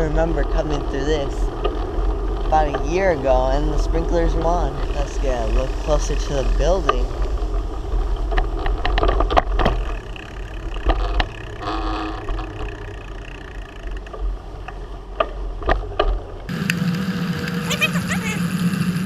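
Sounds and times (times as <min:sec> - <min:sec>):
bicycle clicks and rattles: 0:00.0 - 0:16.5
wind rumbling on microphone: 0:00.0 - 0:16.5.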